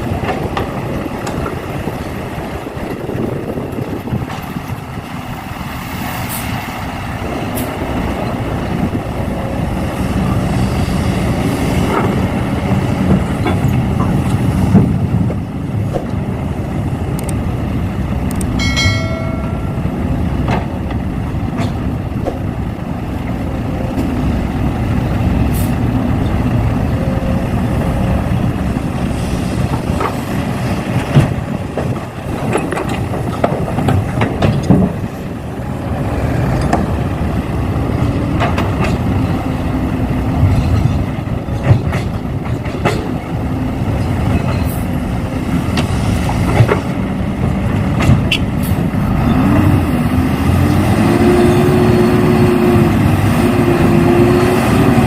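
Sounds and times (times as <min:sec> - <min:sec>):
sharp clicks and knocks: 0:40.4 - 0:43.2, 0:47.9 - 0:48.4.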